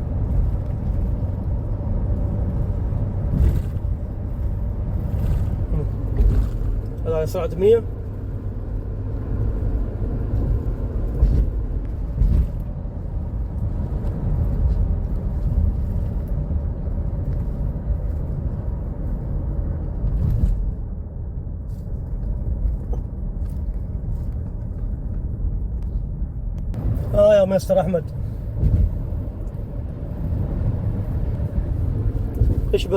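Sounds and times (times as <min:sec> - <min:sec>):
car engine and road rumble: 0:00.0 - 0:32.9.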